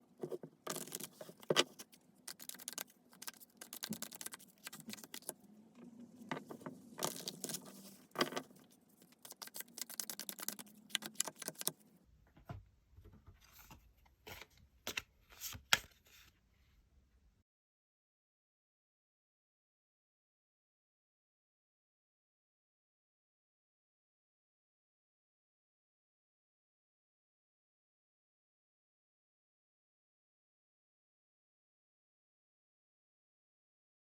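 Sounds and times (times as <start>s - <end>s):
cards being shuffled: 0.2s - 5.4s, 6.6s - 11.8s.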